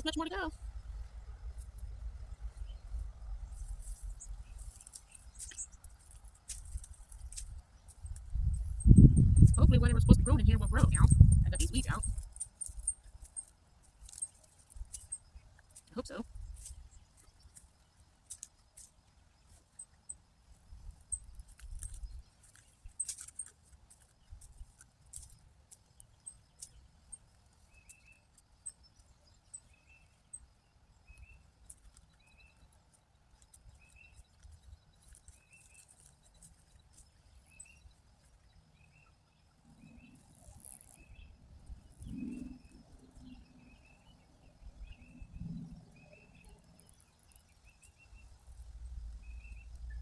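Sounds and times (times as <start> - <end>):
bird chirping: 0.0 - 23.5, 33.4 - 50.0
high ticking bird calls: 1.8 - 20.2
weeds rustling being pulled: 3.5 - 8.8.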